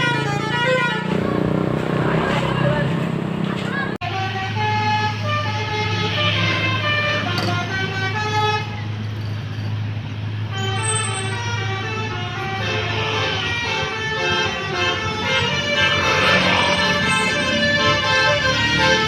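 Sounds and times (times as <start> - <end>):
bus horn playing a tune: 0.0 - 1.4, 4.0 - 9.0, 10.4 - 19.0.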